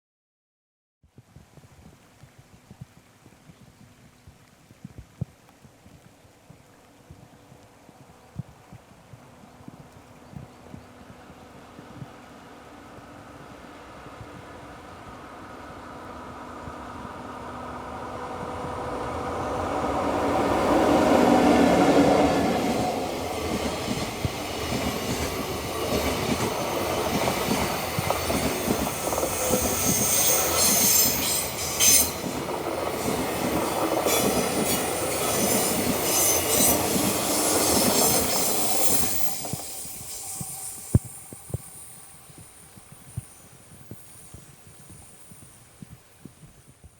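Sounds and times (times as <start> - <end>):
electric locomotive humming: 9.2 - 46.9
high-pitched wheel squeal: 29.3 - 32.3, 34.1 - 46.0.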